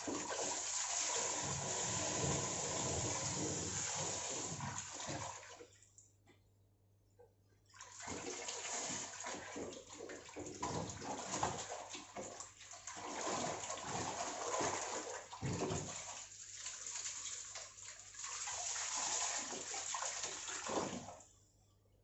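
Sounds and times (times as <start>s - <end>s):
hose water spraying and splashing: 0.0s - 5.3s, 13.1s - 21.0s.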